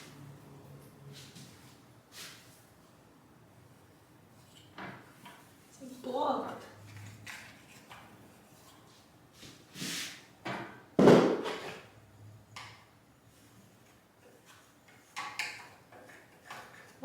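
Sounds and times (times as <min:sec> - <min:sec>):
scrapes and rustles: 0:06.5 - 0:10.2
sharp loud knock: 0:11.0 - 0:11.6.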